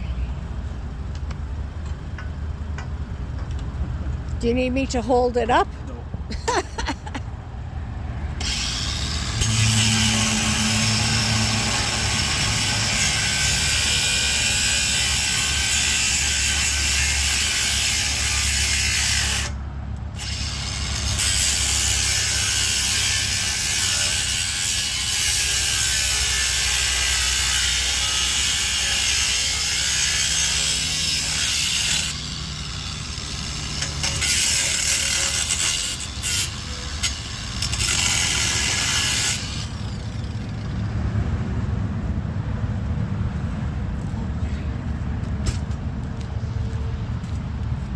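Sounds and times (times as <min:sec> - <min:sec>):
power tool cutting metal: 0:08.4 - 0:19.6, 0:20.2 - 0:40.6.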